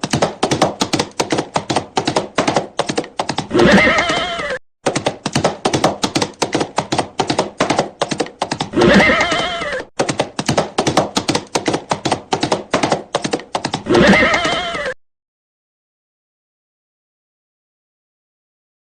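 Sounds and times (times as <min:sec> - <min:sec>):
horse hoofbeats galloping: 0:00.0 - 0:15.0
horse whinny: 0:03.5 - 0:04.6, 0:08.7 - 0:09.9, 0:13.8 - 0:15.0.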